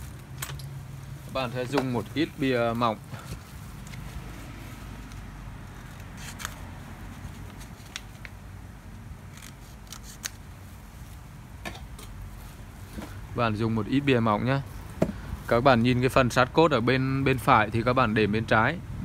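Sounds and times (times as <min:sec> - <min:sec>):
scissors cutting cardboard: 0:05.8 - 0:08.2, 0:09.3 - 0:10.4.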